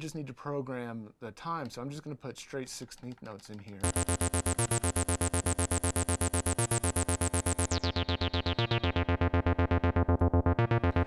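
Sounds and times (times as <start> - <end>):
synthesizer bass line: 3.8 - 11.0.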